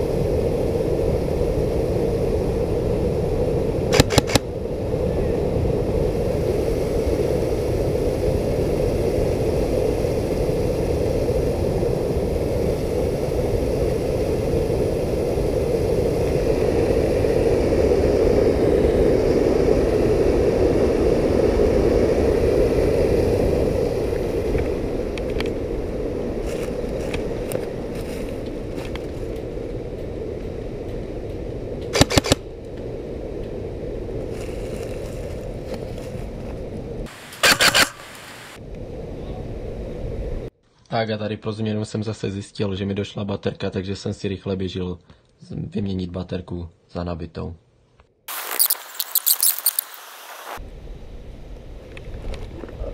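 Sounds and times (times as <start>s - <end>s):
rushing noise on microphone: 0.0s - 30.3s, 31.9s - 40.5s, 48.3s - 52.9s
airsoft gun firing: 3.9s - 4.4s, 31.9s - 32.4s, 37.3s - 38.2s
sharp clicks: 3.9s - 4.4s, 31.9s - 32.4s, 37.3s - 38.2s.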